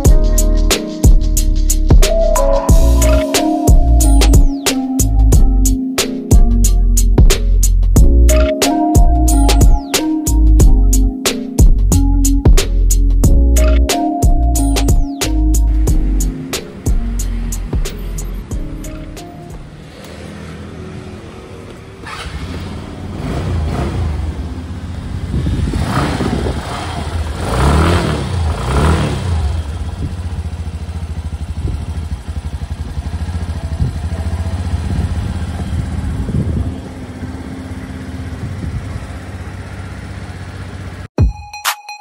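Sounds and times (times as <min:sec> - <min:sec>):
scooter engine revving: 0:15.6 - 0:41.1.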